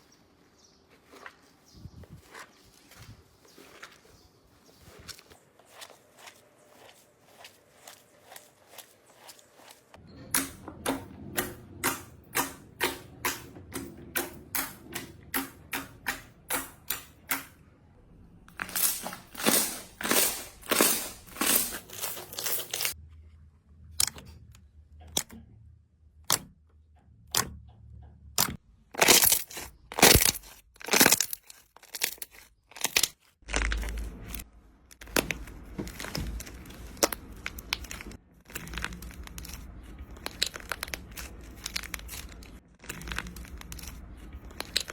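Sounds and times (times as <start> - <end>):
slime crackling and squishing: 0.8 - 10.0, 18.5 - 23.0, 28.4 - 44.9.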